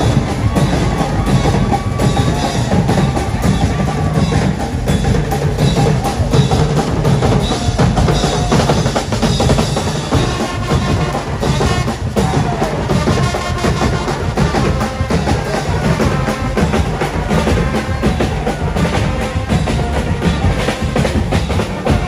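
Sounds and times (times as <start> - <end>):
drum band playing: 0.0 - 22.0.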